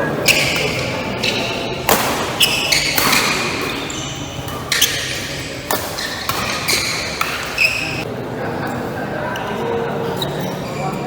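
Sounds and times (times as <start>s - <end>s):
shoes squeaking on court: 0.0s - 8.1s, 9.3s - 11.0s
shuttlecock hit by rackets: 1.8s - 7.6s.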